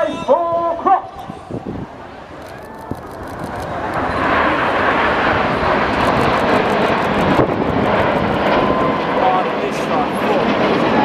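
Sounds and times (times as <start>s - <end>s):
jet engines roaring: 0.0s - 11.0s
jet whine falling in pitch: 2.2s - 11.0s.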